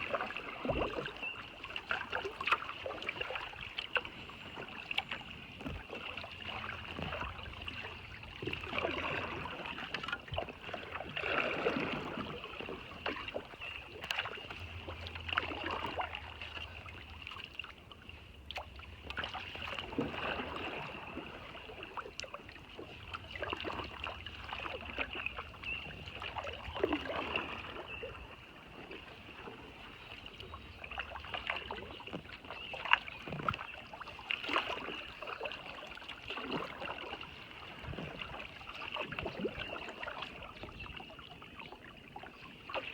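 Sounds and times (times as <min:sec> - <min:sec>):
paddle strokes splashing in water: 0:00.0 - 0:42.9.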